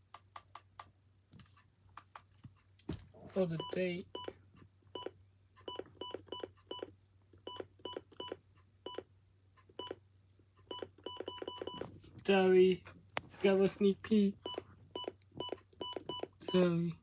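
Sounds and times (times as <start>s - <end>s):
keypad button clicks with beeps: 10.7s - 11.8s.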